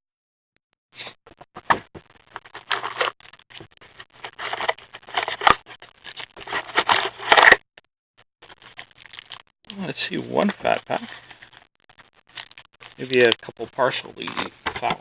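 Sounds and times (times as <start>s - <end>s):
wrapper crinkling and tearing: 2.3s - 7.6s, 8.4s - 13.5s.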